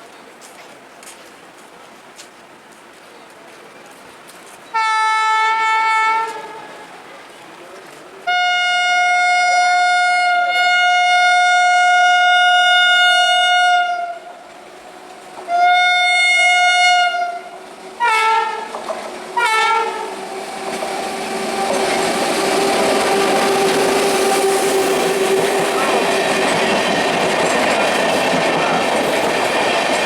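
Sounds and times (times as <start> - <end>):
train running on rails: 0.0 - 30.0
train horn blasts: 4.7 - 6.7, 8.3 - 14.4, 15.4 - 18.7, 19.4 - 20.2.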